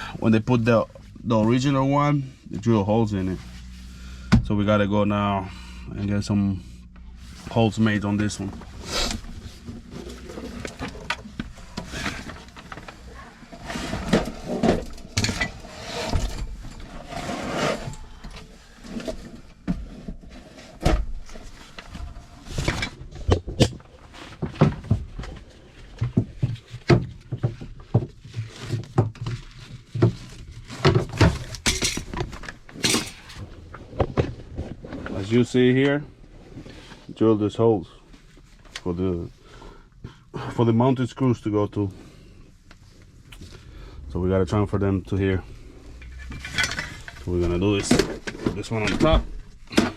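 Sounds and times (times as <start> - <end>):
metal parts clinking and rattling: 31.4 - 33.4, 46.0 - 49.1.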